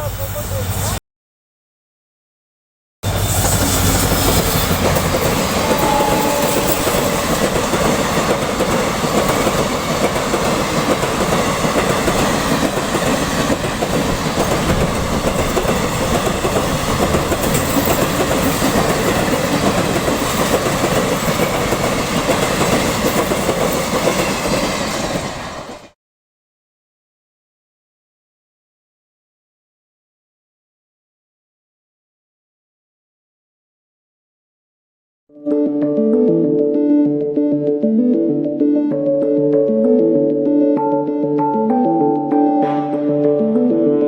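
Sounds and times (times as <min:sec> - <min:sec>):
train wheels clattering over rails: 0:03.1 - 0:25.9.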